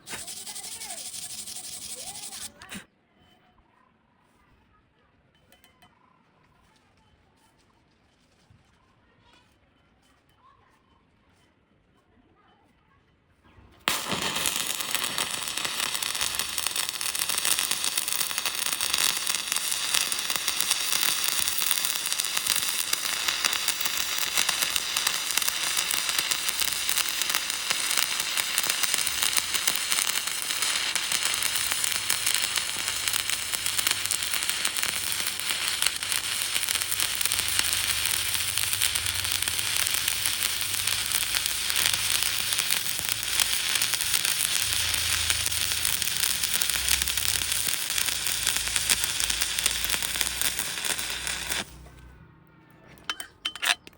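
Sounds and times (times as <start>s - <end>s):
welding arc crackling: 0.0s - 2.9s, 13.9s - 51.8s.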